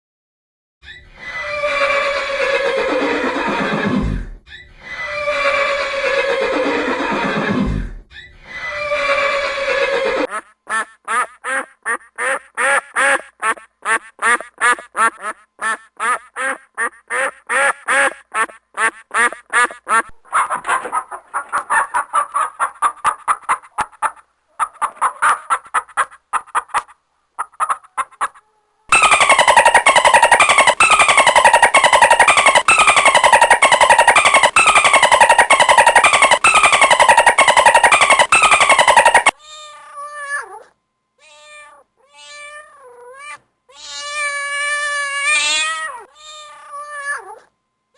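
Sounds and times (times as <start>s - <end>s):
loud animal call: 1.1s - 4.1s, 4.7s - 10.3s, 28.9s - 39.4s
horse whinnying: 1.2s - 4.2s, 4.8s - 7.9s, 8.5s - 10.3s
rapid choppy animal calls: 18.4s - 39.4s.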